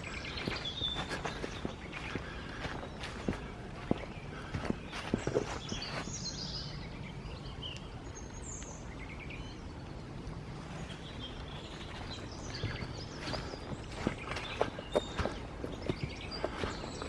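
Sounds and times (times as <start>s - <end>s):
footsteps on path: 0.0s - 6.4s, 11.0s - 17.0s
small birds chirping and trilling: 0.0s - 17.0s.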